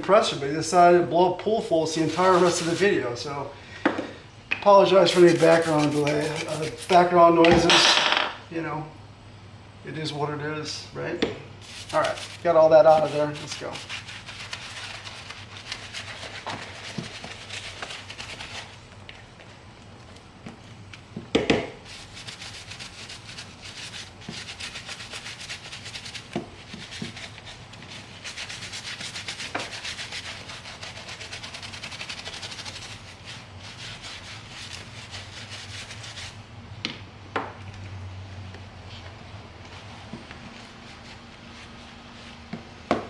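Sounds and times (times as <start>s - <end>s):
leather glove being scrubbed: 1.6s - 3.2s, 4.8s - 7.2s, 11.6s - 18.8s, 21.8s - 36.4s, 39.7s - 42.6s.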